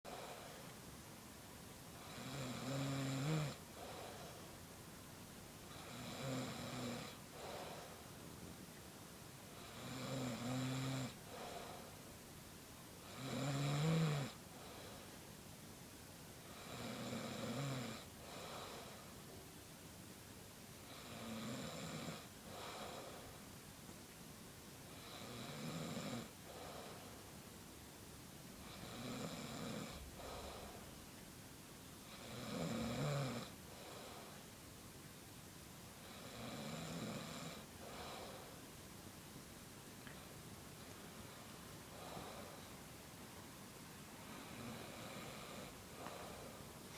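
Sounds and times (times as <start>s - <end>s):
soft breath: 0.1s - 1.0s, 3.6s - 4.7s, 7.2s - 8.5s, 11.2s - 12.2s, 14.4s - 15.4s, 18.1s - 19.4s, 22.4s - 23.5s, 26.4s - 27.4s, 30.0s - 31.1s, 33.6s - 34.6s, 37.6s - 38.8s, 40.0s - 43.6s, 44.2s - 46.9s
man snoring heavily: 2.0s - 4.0s, 5.7s - 7.6s, 9.6s - 11.7s, 13.1s - 14.4s, 16.6s - 18.9s, 20.9s - 23.1s, 25.0s - 26.9s, 28.7s - 30.7s, 32.1s - 34.2s, 36.1s - 38.4s, 44.4s - 46.5s.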